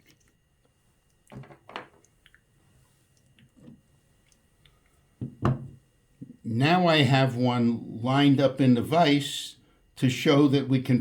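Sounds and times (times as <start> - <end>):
soft knocks of parts handled: 5.2 - 5.8.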